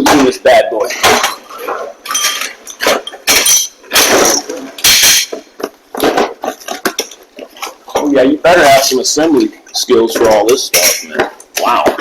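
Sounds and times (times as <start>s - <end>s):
metal parts clinking and rattling: 1.0s - 5.4s, 10.4s - 11.2s.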